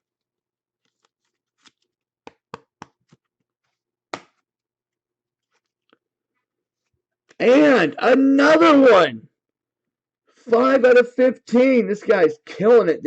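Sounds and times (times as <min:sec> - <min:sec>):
cards clicking and tapping on table: 0:01.6 - 0:03.2, 0:04.1 - 0:04.4.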